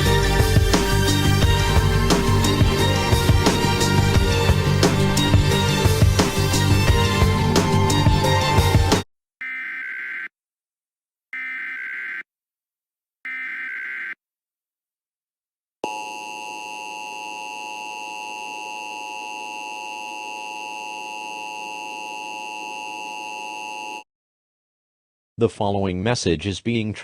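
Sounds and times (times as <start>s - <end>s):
music: 0.0s - 9.0s.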